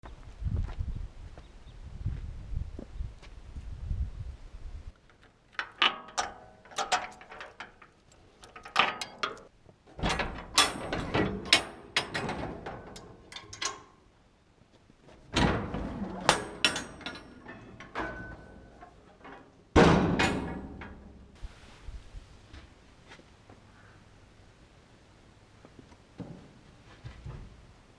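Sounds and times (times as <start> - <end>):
metal tool boxes clanking: 5.6 - 14.0, 15.2 - 21.3.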